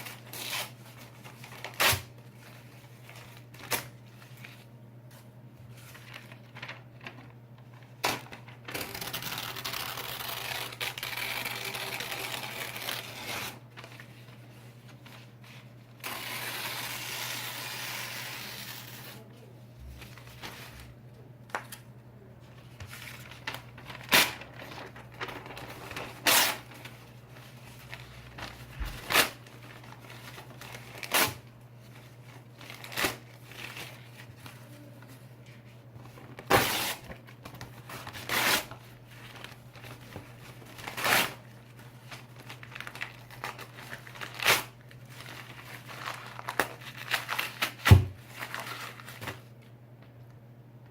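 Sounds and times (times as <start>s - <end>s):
paper ripping: 22.9s - 31.4s, 32.6s - 34.6s, 36.2s - 49.4s.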